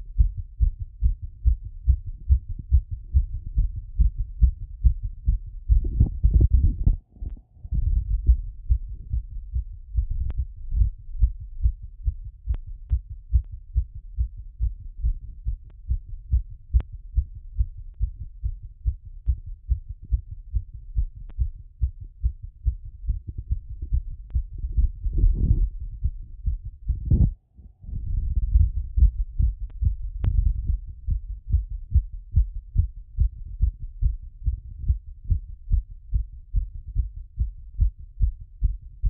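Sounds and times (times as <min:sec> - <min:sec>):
heartbeat through stethoscope: 0:00.0 - 0:39.0.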